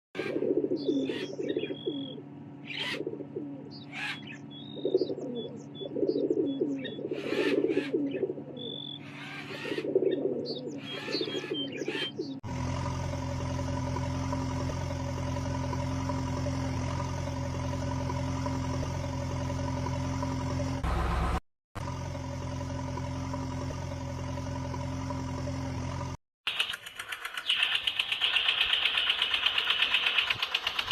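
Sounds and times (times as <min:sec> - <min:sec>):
birds calling and chirping: 0:00.2 - 0:12.4, 0:26.5 - 0:30.9
steady motor hum: 0:00.3 - 0:26.2.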